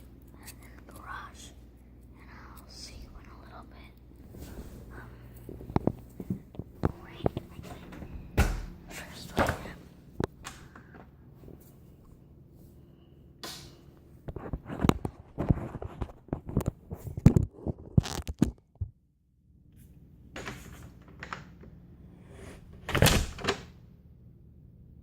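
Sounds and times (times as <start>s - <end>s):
heavy thud: 8.0s - 8.8s.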